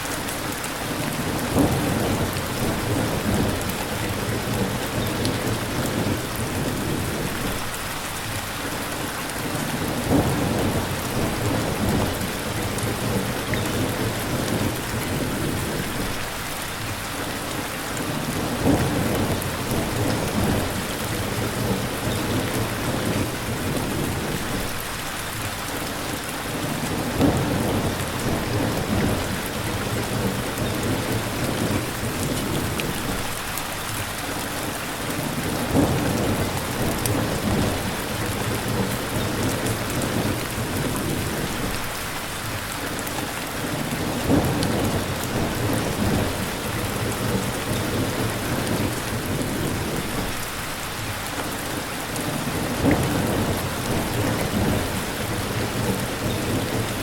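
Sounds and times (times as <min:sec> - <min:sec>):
steady rain: 0:00.0 - 0:57.0
thunder rumbling with cracks: 0:01.2 - 0:07.8, 0:09.8 - 0:16.2, 0:18.2 - 0:24.8, 0:26.6 - 0:33.5, 0:35.3 - 0:41.9, 0:43.7 - 0:50.5, 0:52.2 - 0:57.0.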